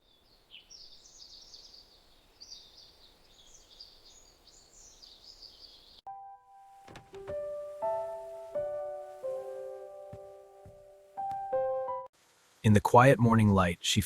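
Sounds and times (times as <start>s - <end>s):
birds chirping: 0.0s - 6.1s
held keyboard chord: 6.1s - 12.1s
faint hiss: 6.9s - 11.3s, 12.1s - 14.0s.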